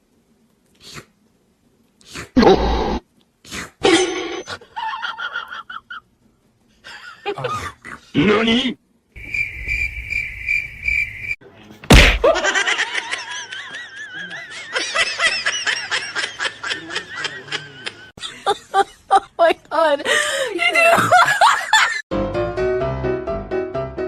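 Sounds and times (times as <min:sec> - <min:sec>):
laughter: 0:04.6 - 0:06.0, 0:12.2 - 0:20.0, 0:20.6 - 0:22.0
loud hit sound effect: 0:11.9 - 0:12.4.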